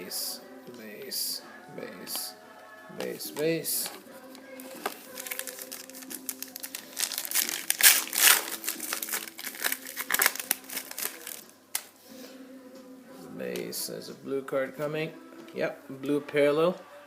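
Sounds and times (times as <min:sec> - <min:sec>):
card wrapper crinkling: 0:04.6 - 0:11.9
cards snapping: 0:04.7 - 0:12.0.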